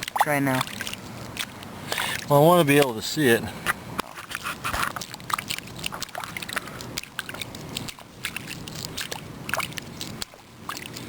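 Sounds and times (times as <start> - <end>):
water sloshing: 0.0 - 11.0.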